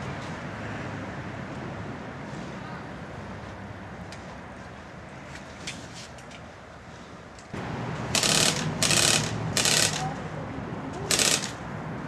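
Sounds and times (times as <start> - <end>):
steady background noise: 0.0 - 12.0
short rattling bursts: 8.0 - 10.2, 11.1 - 11.6.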